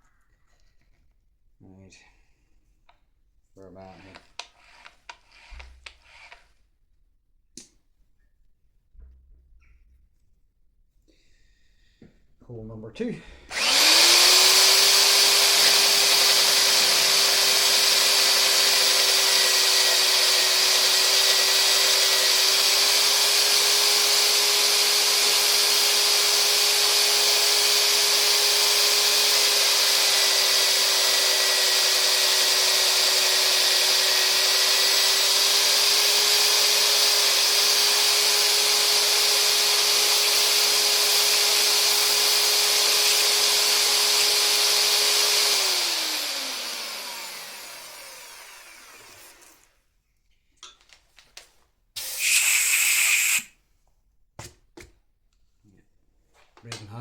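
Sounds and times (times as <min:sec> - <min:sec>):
magnetic drill motor whine: 0:13.5 - 0:49.1
hiss: 0:52.2 - 0:53.5.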